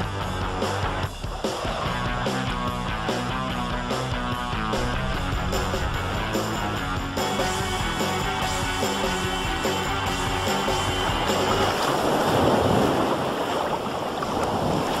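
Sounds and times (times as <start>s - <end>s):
guitar music with steady beat: 0.0s - 10.7s
rush of water: 0.0s - 15.0s.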